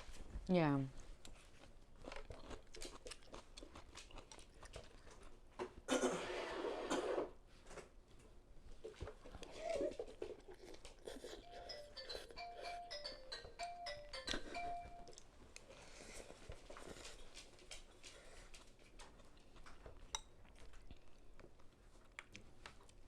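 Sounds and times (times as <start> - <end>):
phone ringtone tune: 11.4 - 15.2.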